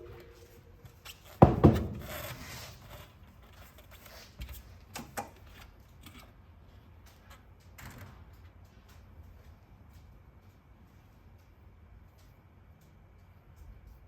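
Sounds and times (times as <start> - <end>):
sharp knocks: 1.4 - 2.2.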